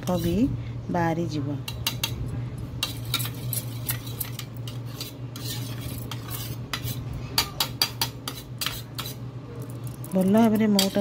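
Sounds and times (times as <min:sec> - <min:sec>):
metal spoon clinking container: 0:10.1 - 0:11.0.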